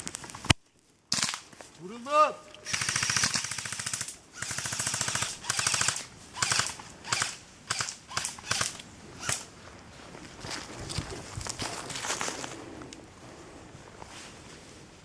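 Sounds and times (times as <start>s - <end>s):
airsoft guns firing bursts: 1.1s - 1.4s, 2.6s - 9.5s.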